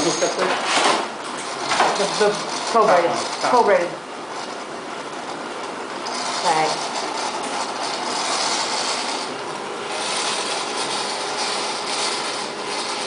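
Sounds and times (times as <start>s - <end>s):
hiss-like mechanical rush: 5.2s - 13.0s.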